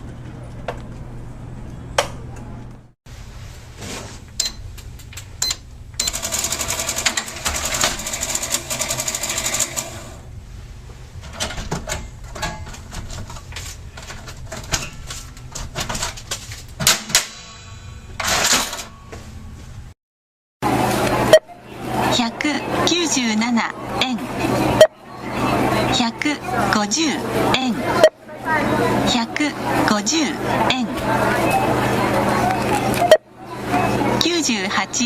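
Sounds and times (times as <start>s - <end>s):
cash register beeps: 4.4s - 4.7s, 5.4s - 10.2s, 32.5s - 33.2s
receipt printer rattling: 6.1s - 10.2s.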